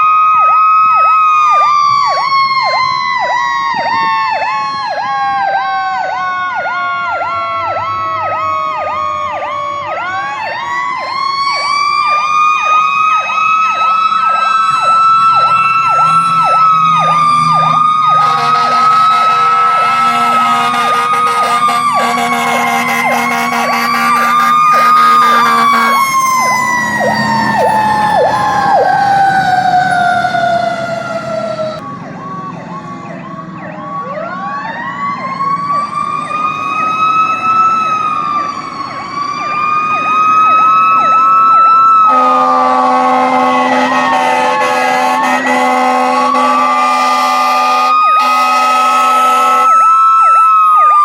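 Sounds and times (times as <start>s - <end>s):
electronic siren yelping: 0.0s - 51.0s
horn blasting: 18.1s - 26.2s, 42.1s - 49.8s.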